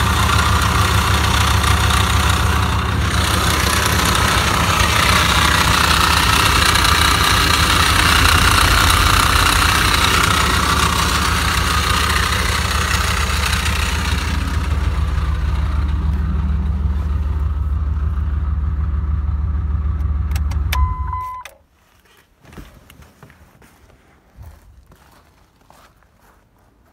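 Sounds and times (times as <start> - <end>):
truck engine running: 0.0 - 21.4
rushing sound: 1.4 - 19.0.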